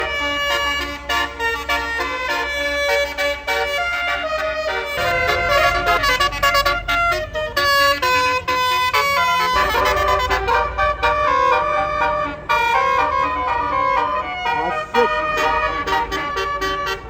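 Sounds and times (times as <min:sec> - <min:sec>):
bus horn melody: 0:00.0 - 0:17.0
low engine rumble: 0:00.0 - 0:17.0.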